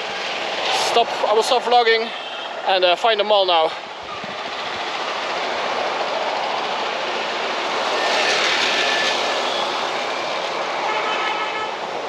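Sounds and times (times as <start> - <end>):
road traffic: 0.0 - 12.0.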